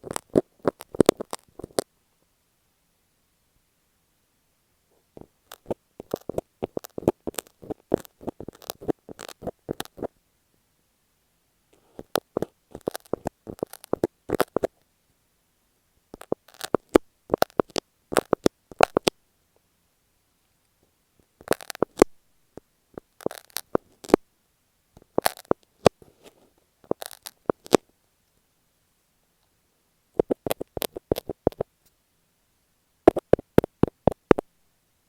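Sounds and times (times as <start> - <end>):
tape crackling on microphone: 0.0 - 1.9, 5.2 - 10.1, 11.7 - 14.8, 16.1 - 19.2, 21.2 - 24.3, 25.0 - 27.9, 30.2 - 32.0, 33.0 - 34.5.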